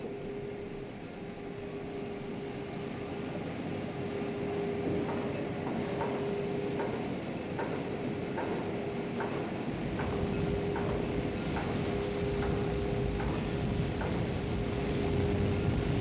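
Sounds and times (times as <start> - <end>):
mechanical rumble: 9.8 - 16.0.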